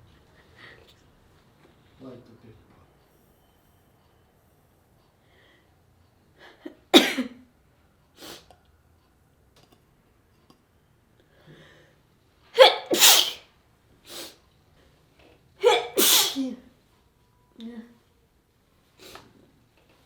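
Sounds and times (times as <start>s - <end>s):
person sneezing: 12.6s - 13.5s, 15.6s - 16.6s.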